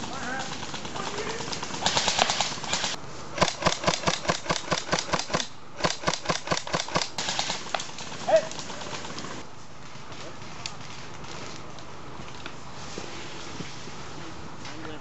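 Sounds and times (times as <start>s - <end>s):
airsoft rifle firing bursts: 0.0s - 9.4s.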